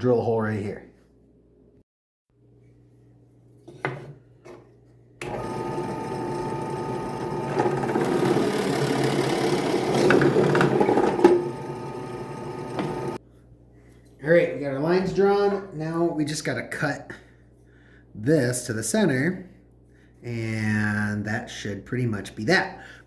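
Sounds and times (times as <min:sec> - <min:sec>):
electric drill whining: 0:05.2 - 0:13.2.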